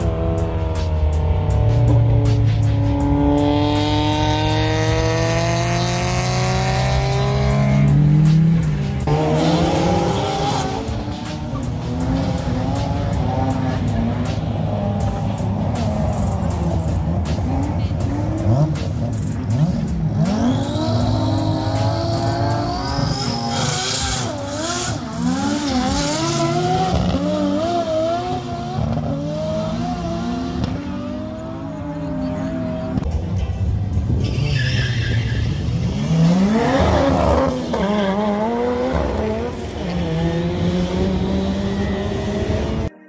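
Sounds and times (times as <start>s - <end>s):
car engine revving: 0.0s - 33.3s, 33.9s - 42.9s.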